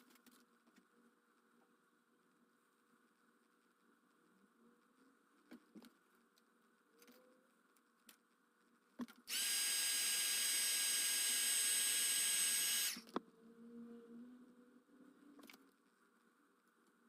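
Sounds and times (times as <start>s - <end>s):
small electric motor whining: 9.3s - 13.1s.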